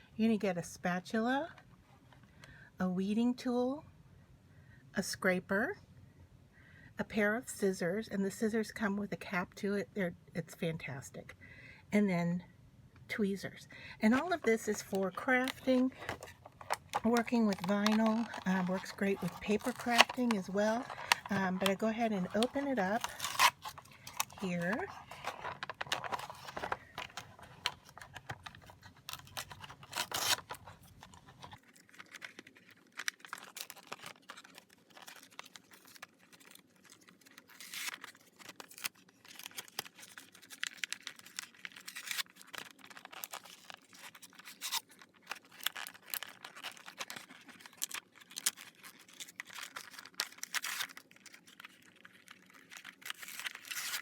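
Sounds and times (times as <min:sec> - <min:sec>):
packaging crinkling and tearing: 0:14.0 - 0:54.0.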